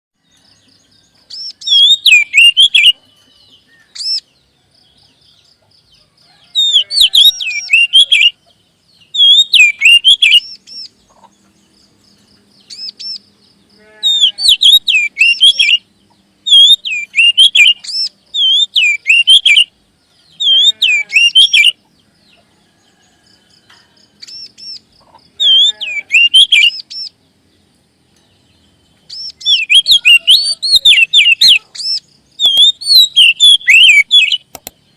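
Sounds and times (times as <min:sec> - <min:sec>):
bird singing whistled phrases: 0:01.3 - 0:03.0, 0:06.6 - 0:08.4, 0:09.1 - 0:10.9, 0:14.1 - 0:15.8, 0:16.5 - 0:19.7, 0:20.4 - 0:21.8, 0:25.4 - 0:27.1, 0:29.1 - 0:34.5
bird chattering: 0:01.3 - 0:03.1, 0:14.0 - 0:21.8, 0:24.2 - 0:27.2, 0:29.0 - 0:34.8.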